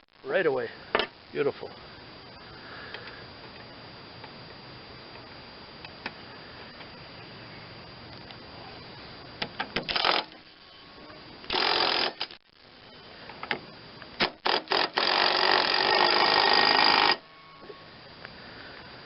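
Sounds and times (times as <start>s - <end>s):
ratchet wrench ratcheting: 9.9s - 10.3s, 11.5s - 12.4s, 14.2s - 17.2s.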